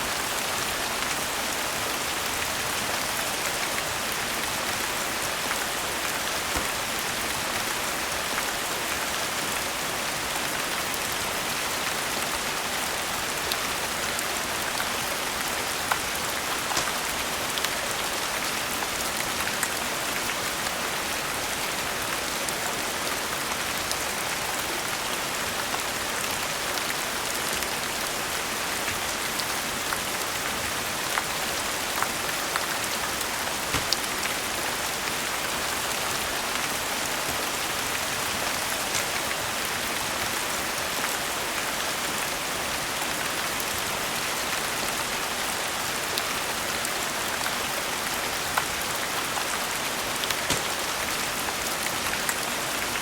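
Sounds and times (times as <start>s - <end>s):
steady rain hiss: 0.0s - 53.0s
sharp rain ticks: 14.8s - 20.3s, 50.2s - 52.4s.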